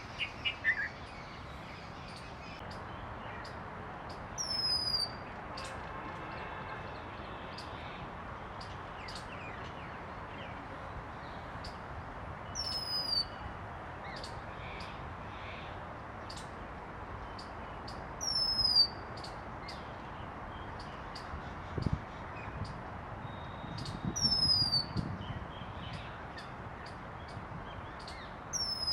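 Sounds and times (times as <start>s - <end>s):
bird giving down-slurred whistle: 23.5s - 25.0s.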